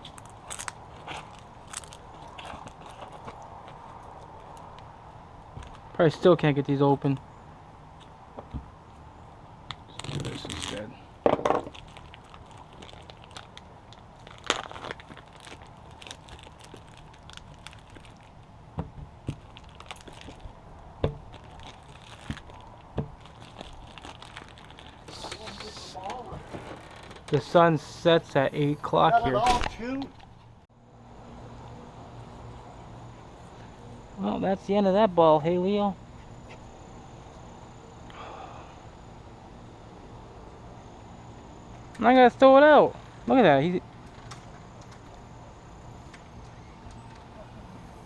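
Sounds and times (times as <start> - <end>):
plastic packaging crinkling: 0.0 - 4.6, 9.9 - 10.9, 11.5 - 18.5, 19.2 - 27.2
insects trilling: 30.8 - 48.0.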